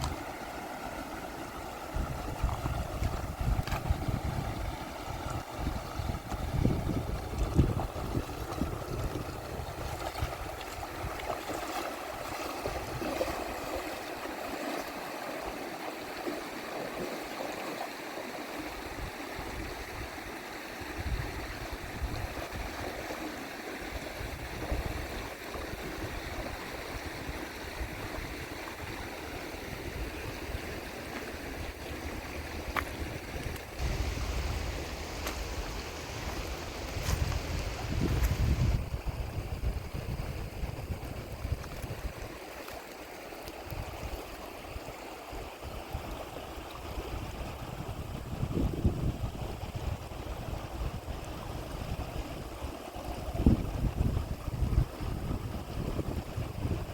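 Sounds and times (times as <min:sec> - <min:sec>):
river water flowing: 0:00.0 - 0:56.9
low rumbles: 0:32.0 - 0:38.9.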